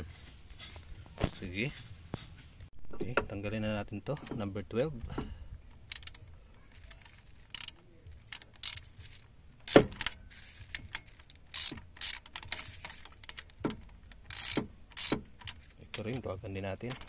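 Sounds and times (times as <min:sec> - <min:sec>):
ratchet wrench clicking: 0:05.6 - 0:17.0.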